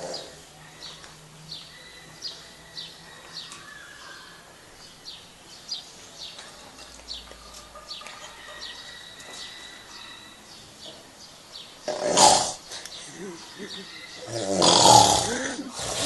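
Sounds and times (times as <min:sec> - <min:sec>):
man snoring: 0:14.2 - 0:16.0.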